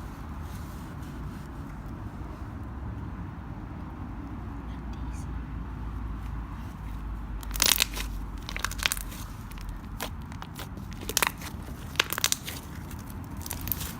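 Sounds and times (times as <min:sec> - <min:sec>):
slime crackling and crunching: 0:07.4 - 0:13.9.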